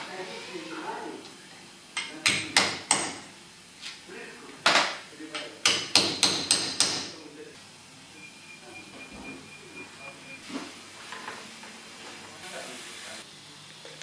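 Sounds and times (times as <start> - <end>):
hammer strikes: 2.0 - 3.3, 5.6 - 7.2.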